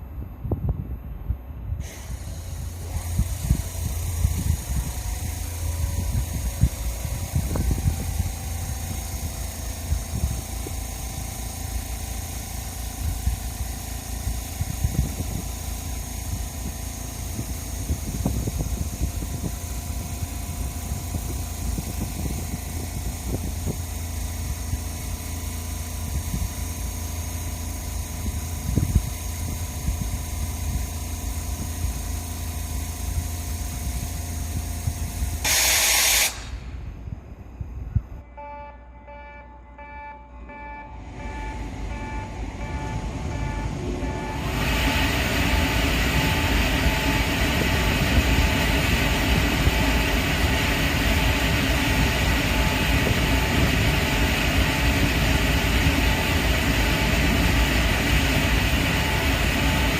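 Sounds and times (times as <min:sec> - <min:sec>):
loud hiss-like burst: 0:01.8 - 0:28.5, 0:31.3 - 0:37.1
locomotive machinery rumbling: 0:01.8 - 0:35.5, 0:36.3 - 0:59.9
multi-tone machine whine: 0:01.8 - 0:59.9.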